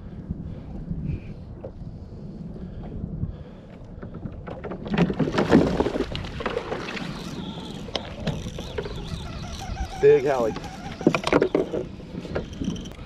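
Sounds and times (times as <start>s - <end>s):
water: 0.0s - 13.0s
wind: 0.0s - 13.0s
fish thrashing and splashing: 4.9s - 12.9s.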